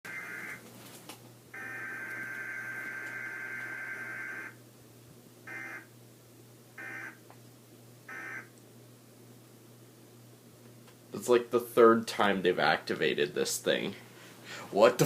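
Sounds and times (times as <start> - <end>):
alert tone data bursts: 0.1 - 0.6, 1.6 - 4.5, 5.5 - 5.8, 6.8 - 7.2
steady low hum: 0.1 - 15.0.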